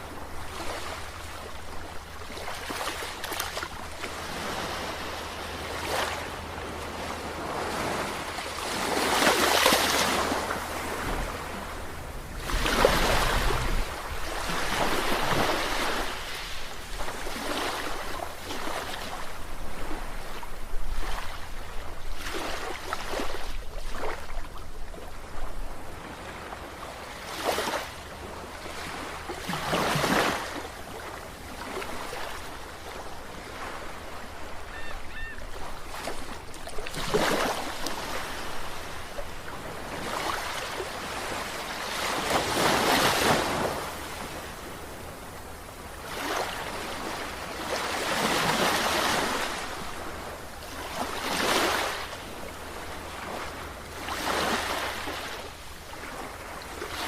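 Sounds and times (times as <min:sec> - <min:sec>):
sea waves washing in: 0:00.0 - 0:24.2.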